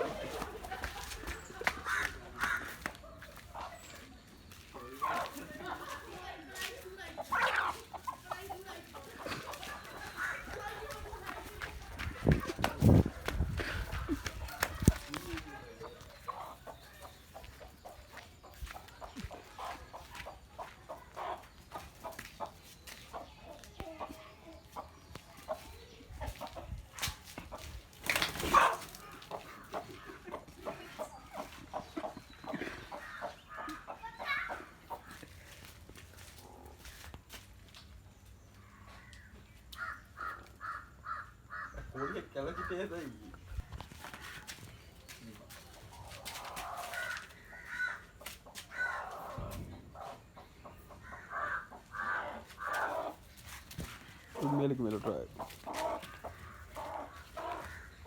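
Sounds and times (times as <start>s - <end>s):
chicken clucking: 0.0s - 37.0s, 44.0s - 58.0s
chicken squawking: 28.4s - 29.8s, 51.0s - 53.2s.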